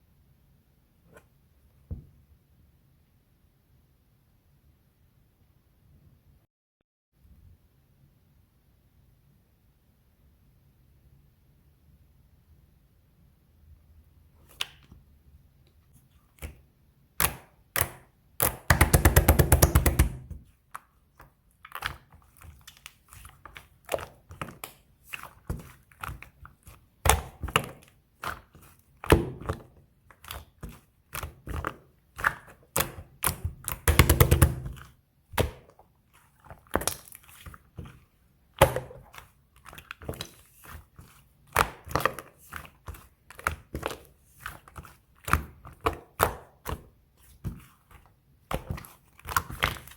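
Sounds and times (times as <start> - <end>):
slime being squished: 16.3 - 49.9.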